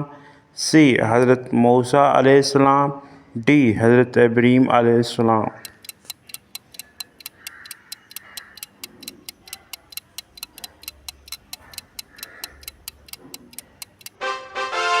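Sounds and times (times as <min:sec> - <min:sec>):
rapid clock ticking: 0:05.6 - 0:14.2.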